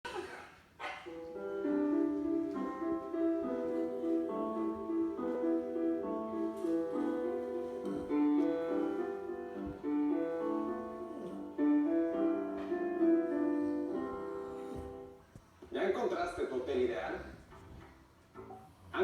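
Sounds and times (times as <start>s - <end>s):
gentle piano melody: 1.0s - 15.4s.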